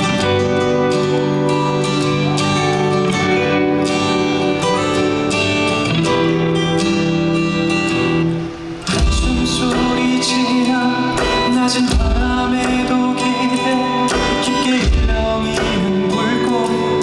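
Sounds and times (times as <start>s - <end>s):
strummed acoustic guitar: 0.0s - 17.0s
bass and drum beat: 8.9s - 10.2s, 11.1s - 13.1s, 14.1s - 16.1s.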